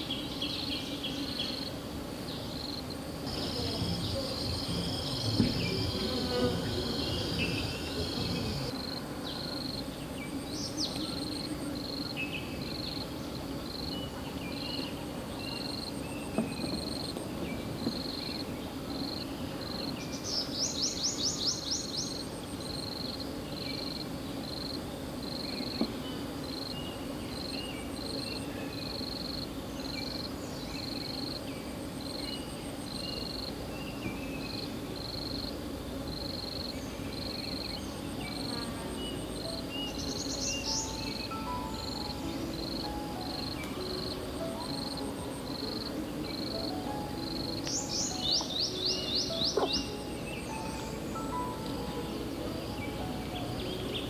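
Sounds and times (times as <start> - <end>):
low background noise: 0.0 - 54.0
high repeating chirp: 3.3 - 8.7
rapid bird trill: 3.3 - 8.7.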